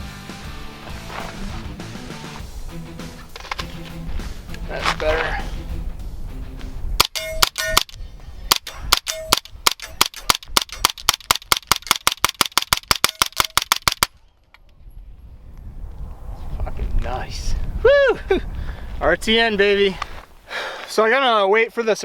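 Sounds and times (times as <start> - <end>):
metallic ring: 7.0 - 7.9, 9.0 - 10.0.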